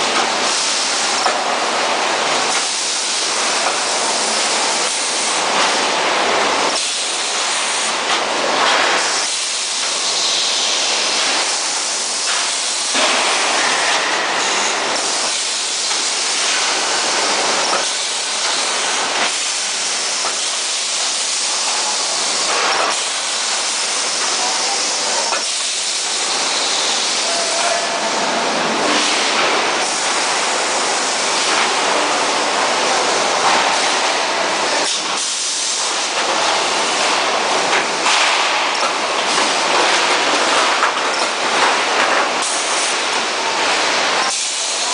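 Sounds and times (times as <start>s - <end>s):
spot welding machine hissing: 6.7s - 43.5s.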